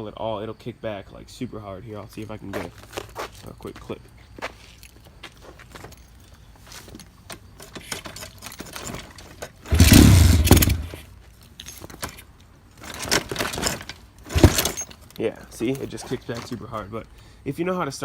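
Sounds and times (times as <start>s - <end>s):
kick lever clicking and rattling: 7.3s - 11.0s, 12.9s - 15.2s
engine kicking back: 9.7s - 11.0s, 14.3s - 14.8s.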